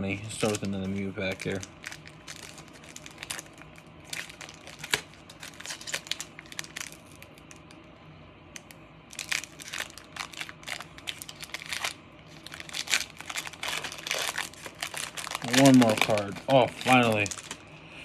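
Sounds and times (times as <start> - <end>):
foil wrapper crinkling and tearing: 0.3 - 7.6, 8.6 - 17.6.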